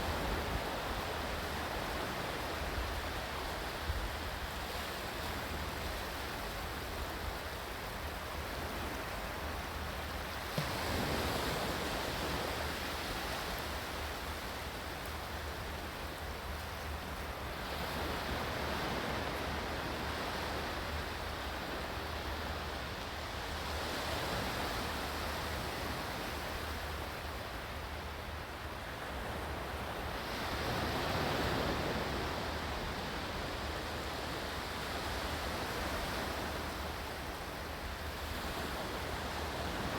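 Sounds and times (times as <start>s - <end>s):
ocean waves washing ashore: 0.0s - 39.9s.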